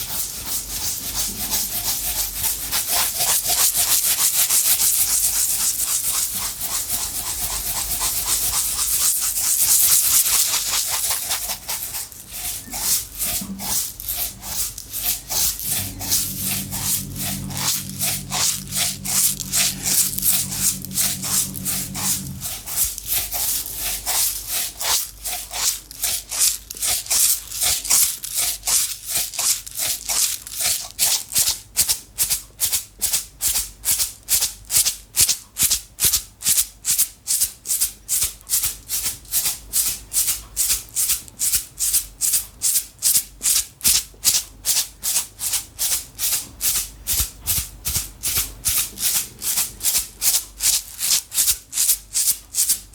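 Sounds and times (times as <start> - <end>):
container of dry contents rattling: 8.6 - 16.0, 25.6 - 31.5.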